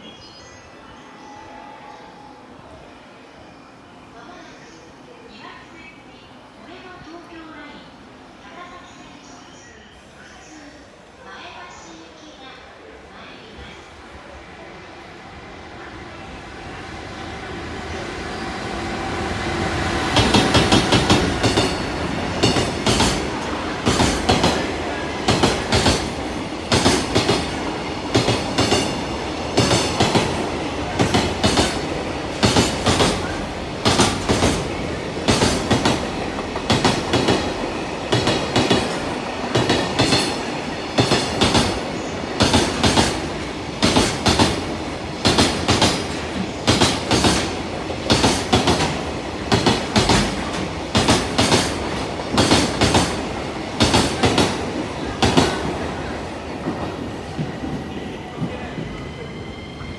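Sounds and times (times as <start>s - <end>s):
steady train rolling noise: 0.0s - 59.9s
train wheels clacking over rail joints: 19.6s - 57.8s.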